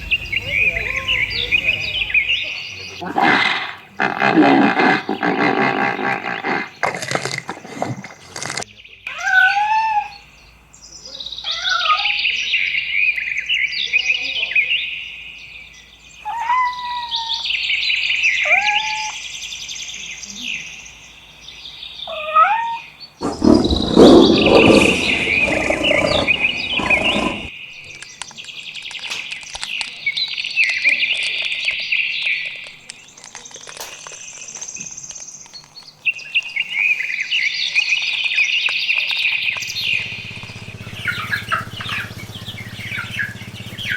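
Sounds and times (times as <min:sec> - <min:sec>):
small birds chirping: 0:00.0 - 0:09.0, 0:23.0 - 0:43.9
low whistled bird calls: 0:23.2 - 0:27.5, 0:39.3 - 0:43.9.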